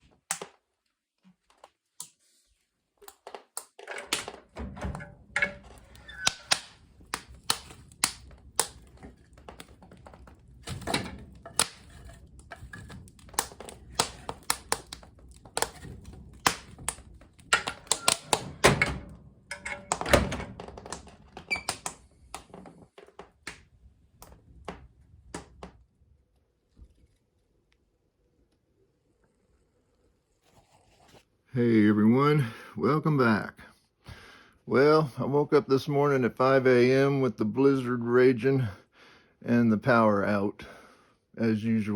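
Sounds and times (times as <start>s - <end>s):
sharp clicks taps and knocks: 3.0s - 22.5s.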